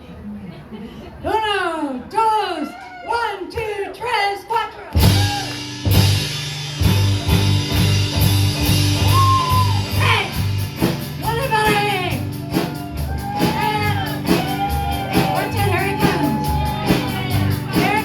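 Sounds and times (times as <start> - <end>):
band playing with bass and drums: 5.0 - 18.0.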